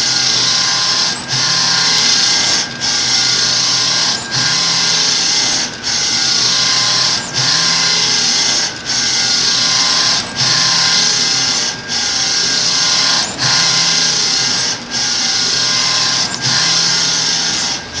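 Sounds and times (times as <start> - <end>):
printer rasping mechanical noise: 0.0 - 18.0.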